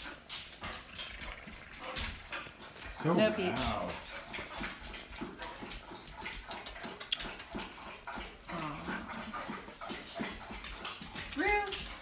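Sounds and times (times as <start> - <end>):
small clicks and rustles: 0.0 - 3.0, 3.6 - 12.0
animal whining: 8.5 - 9.3.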